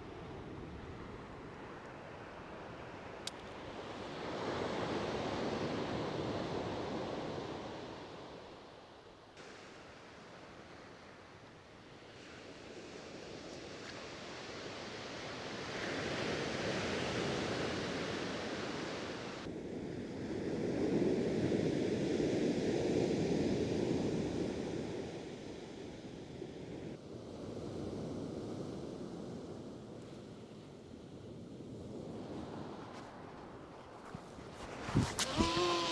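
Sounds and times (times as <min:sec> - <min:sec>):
surf breaking on shingle: 0:34.6 - 0:35.9.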